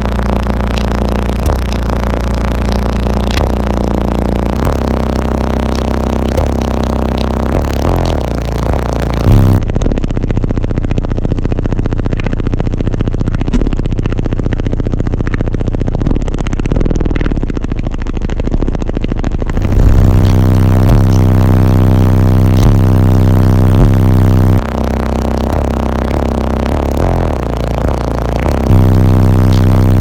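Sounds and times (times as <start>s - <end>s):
loud subwoofer bass of rap track: 0.0s - 9.6s, 19.5s - 30.0s.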